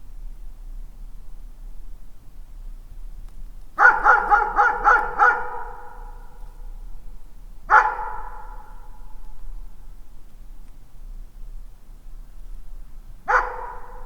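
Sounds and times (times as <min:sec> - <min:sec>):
distant dog barking: 0:03.8 - 0:06.3, 0:07.7 - 0:09.2, 0:13.3 - 0:14.0.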